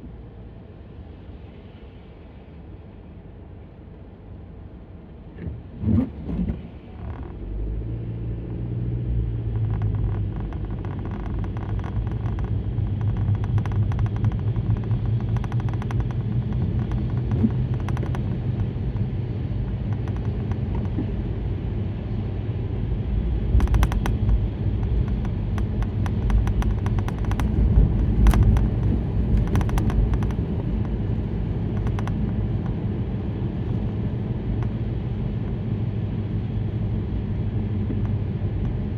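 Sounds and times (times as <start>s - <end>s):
car engine and tyre drone: 0.0s - 38.9s
sharp ticks: 9.7s - 19.1s, 23.5s - 32.9s.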